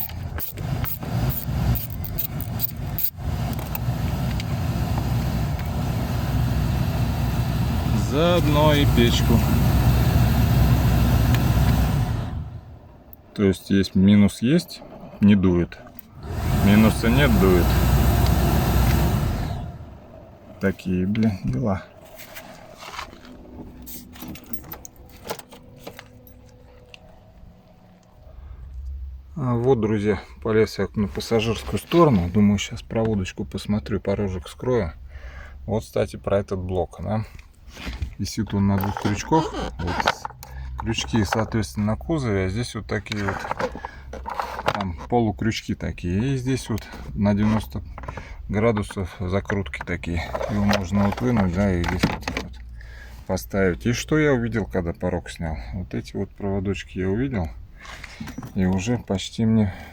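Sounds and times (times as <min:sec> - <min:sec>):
metallic clinks and rattles: 0:00.0 - 0:03.2
heater blower fan whirring: 0:00.0 - 0:13.2, 0:16.1 - 0:21.3
faint steady hum: 0:00.0 - 0:36.0.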